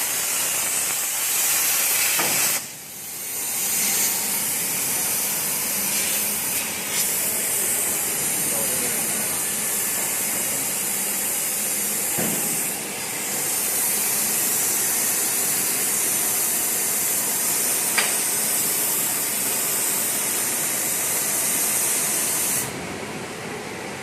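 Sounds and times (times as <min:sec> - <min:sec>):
plasma cutter arc hissing: 0:00.0 - 0:22.8.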